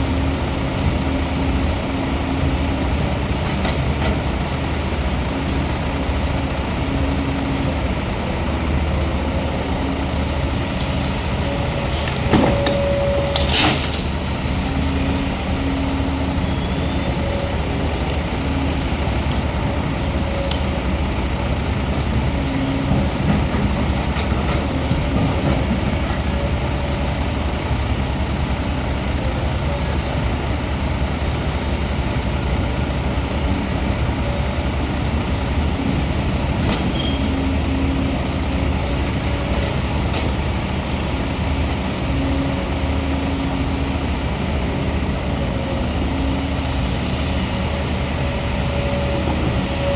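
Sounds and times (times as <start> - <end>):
diesel engine drone: 0.0 - 49.9
short sharp hiss: 13.4 - 14.2.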